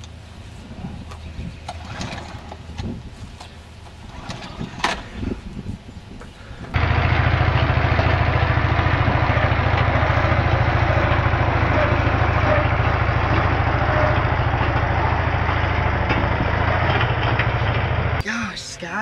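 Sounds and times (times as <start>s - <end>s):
lawn mower engine running: 1.7s - 2.8s, 6.7s - 18.2s.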